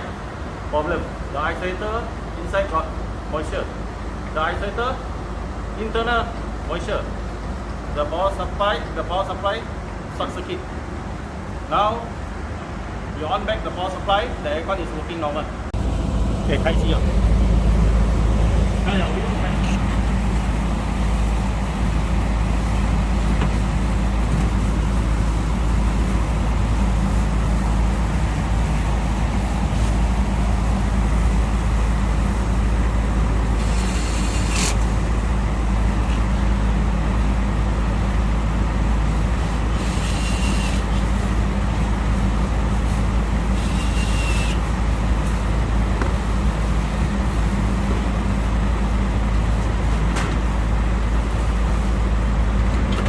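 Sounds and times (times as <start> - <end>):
compressor and fans droning: 0.0 - 53.0
brief high hisses: 43.6 - 44.6.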